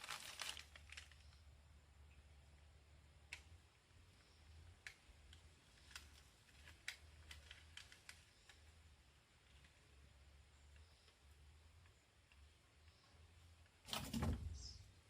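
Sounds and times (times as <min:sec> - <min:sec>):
faint clicks and ticks: 0:03.2 - 0:13.8.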